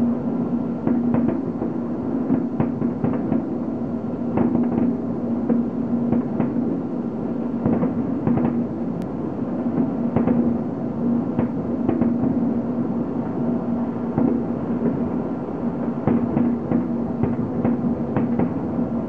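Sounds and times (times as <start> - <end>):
constant rumble: 0.0 - 19.0
fireworks bangs and booms: 0.6 - 6.8, 7.5 - 8.8, 9.6 - 19.0.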